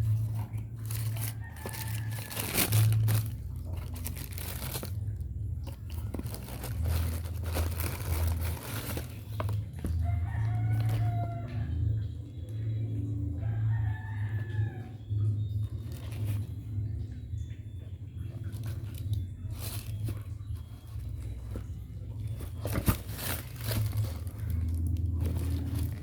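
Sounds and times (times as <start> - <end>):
paper rustling and crinkling: 0.0 - 11.6, 15.6 - 17.0, 18.3 - 26.0
rooster crowing: 0.1 - 3.4, 9.8 - 12.1, 13.3 - 15.2.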